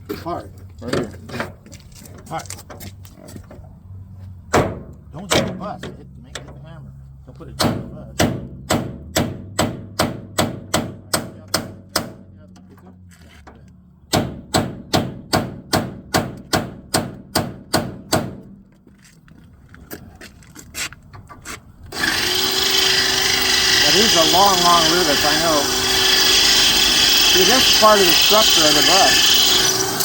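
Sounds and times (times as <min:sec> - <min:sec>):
power drill drilling: 0:21.9 - 0:30.0.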